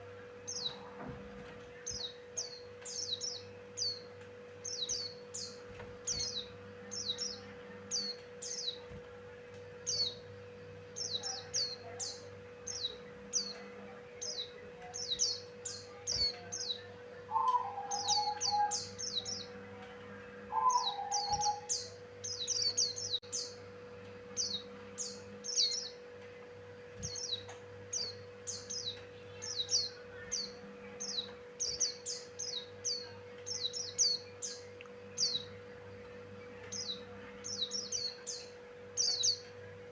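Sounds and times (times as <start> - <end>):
steady low hum: 0.0 - 39.9
bird chirping: 9.8 - 23.6, 27.0 - 39.6
low two-part bird calls: 14.2 - 19.4, 20.5 - 23.0.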